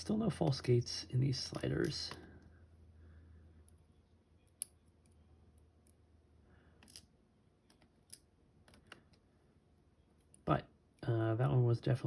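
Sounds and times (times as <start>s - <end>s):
small metal lock parts clicking: 6.8s - 9.2s.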